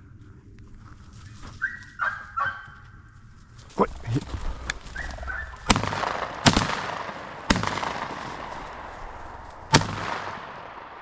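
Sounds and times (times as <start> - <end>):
shotgun shots echoing: 4.4 - 11.0.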